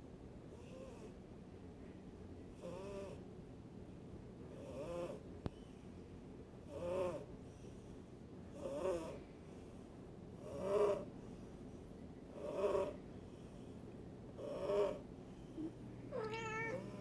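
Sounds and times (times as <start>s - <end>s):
cat snoring: 0.6s - 1.1s, 2.6s - 3.2s, 4.5s - 5.2s, 6.7s - 7.3s, 8.5s - 9.2s, 10.4s - 11.1s, 12.4s - 13.5s, 14.4s - 15.7s.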